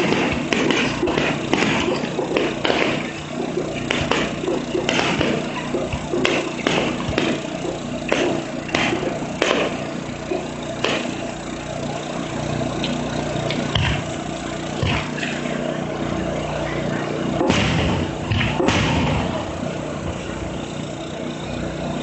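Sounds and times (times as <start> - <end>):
fireworks bursting: 0.0 - 22.0
steady low hum: 0.0 - 22.0.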